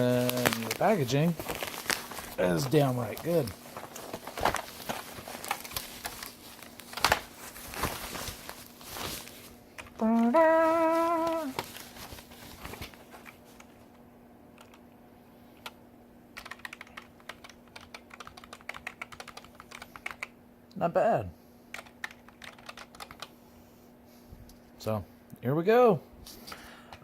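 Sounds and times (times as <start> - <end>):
packaging rustling: 0.0 - 13.8
person humming a note: 10.0 - 11.6
keyboard keys clicking: 14.6 - 14.8, 16.4 - 20.3, 21.7 - 23.3.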